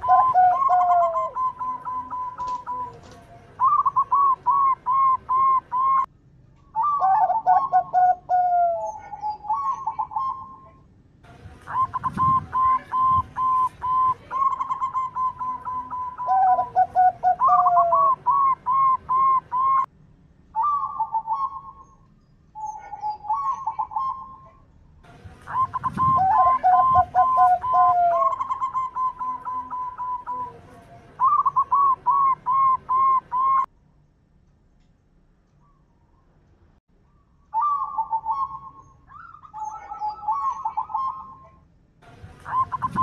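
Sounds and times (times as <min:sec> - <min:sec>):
doves cooing: 0:00.0 - 0:06.1, 0:06.8 - 0:10.8, 0:11.6 - 0:19.9, 0:25.2 - 0:33.7, 0:37.6 - 0:41.6, 0:42.3 - 0:43.0.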